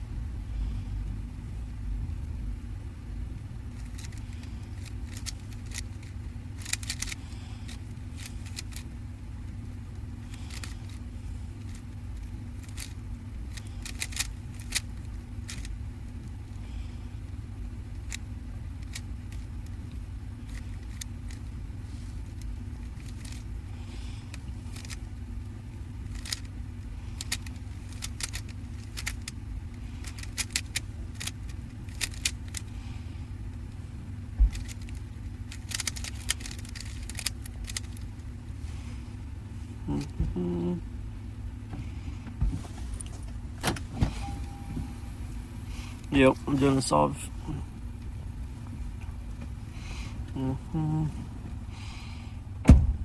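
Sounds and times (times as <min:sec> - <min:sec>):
steady low hum: 0:00.0 - 0:53.0
puzzle cube clicking: 0:03.8 - 0:08.9, 0:10.2 - 0:11.0, 0:11.6 - 0:15.8, 0:17.9 - 0:18.2, 0:18.8 - 0:21.5, 0:22.1 - 0:23.6, 0:24.3 - 0:25.1, 0:26.0 - 0:29.4, 0:30.0 - 0:32.7, 0:34.5 - 0:38.2, 0:39.8 - 0:40.7.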